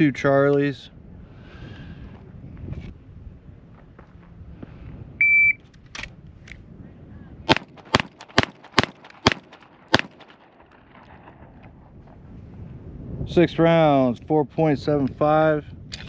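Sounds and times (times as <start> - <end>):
shot timer beep: 5.2 - 5.6
pistol shots: 7.5 - 11.9.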